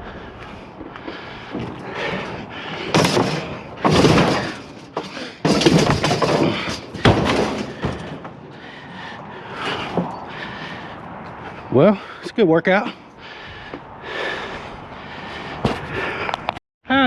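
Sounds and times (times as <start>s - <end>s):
scrap metal clattering and scraping: 1.1s - 8.8s.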